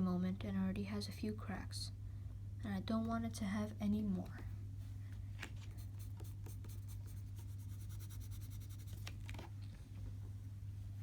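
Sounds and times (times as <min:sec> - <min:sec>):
steady low hum: 0:00.0 - 0:11.0
pencil scratching on paper: 0:05.8 - 0:09.1.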